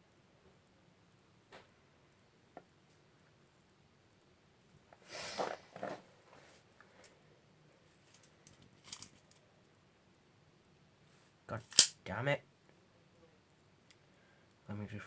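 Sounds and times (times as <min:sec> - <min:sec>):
rustling and handling noises: 0:04.9 - 0:07.2, 0:07.8 - 0:09.6.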